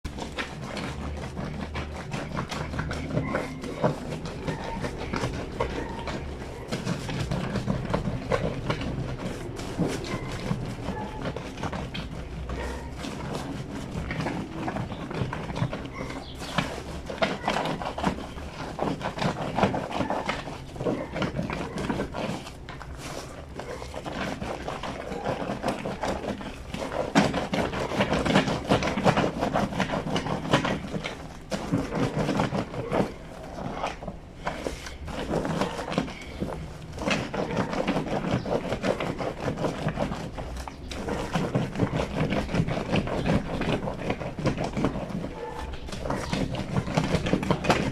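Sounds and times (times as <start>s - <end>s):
scrubbing fabric on washboard: 0.1s - 47.9s.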